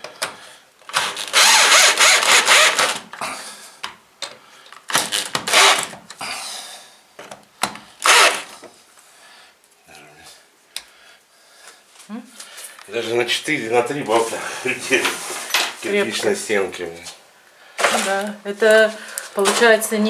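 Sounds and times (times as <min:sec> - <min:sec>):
cordless drill driving screws: 0:00.9 - 0:03.1, 0:05.0 - 0:05.9, 0:08.0 - 0:08.6.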